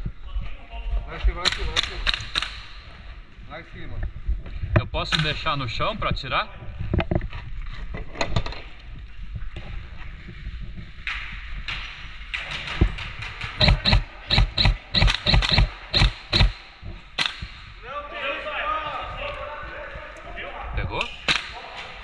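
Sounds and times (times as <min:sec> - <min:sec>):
airsoft rifle shots: 0:01.4 - 0:02.8, 0:13.4 - 0:17.7, 0:21.2 - 0:21.8.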